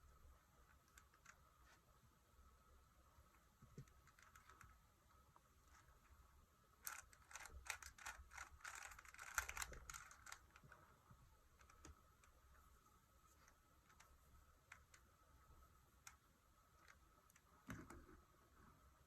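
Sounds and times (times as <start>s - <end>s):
puzzle cube plastic clicks: 6.8s - 10.6s.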